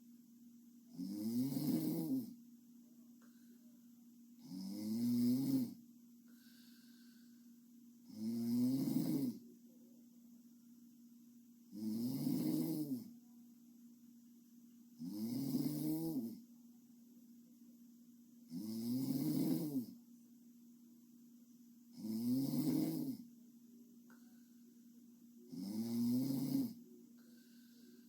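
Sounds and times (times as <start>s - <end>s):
faint steady hum: 0.0s - 28.0s
woman snoring: 0.9s - 2.4s, 4.4s - 5.8s, 8.0s - 9.4s, 11.7s - 13.1s, 15.0s - 16.4s, 18.5s - 20.0s, 22.0s - 23.2s, 25.5s - 26.8s.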